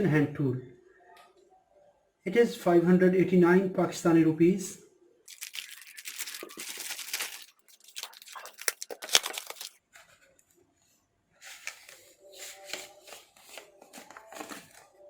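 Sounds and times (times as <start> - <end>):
plastic packaging rustling and tearing: 5.3 - 10.2, 11.4 - 15.0.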